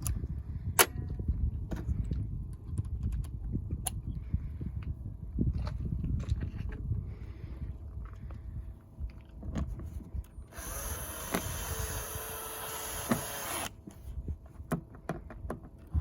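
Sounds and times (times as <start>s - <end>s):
power drill driving screw: 10.5s - 13.7s.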